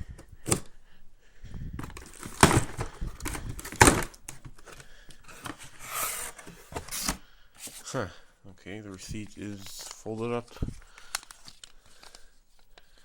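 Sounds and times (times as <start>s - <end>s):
packaging crinkling and rustling: 1.8s - 7.8s, 8.9s - 13.0s.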